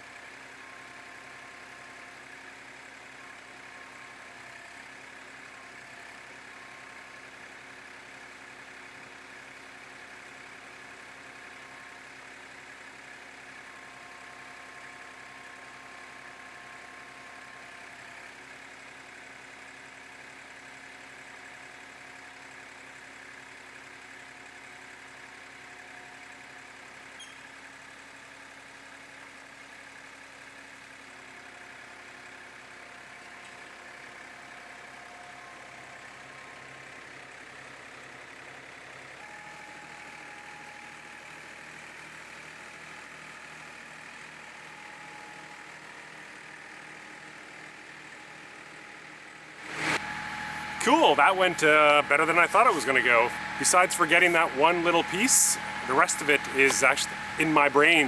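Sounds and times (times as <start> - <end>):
tractor diesel engine running: 49.6 - 58.0.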